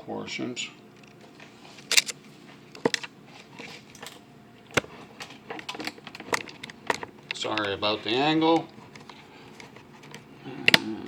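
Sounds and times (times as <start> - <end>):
sharp handling clicks and knocks: 3.9 - 7.8.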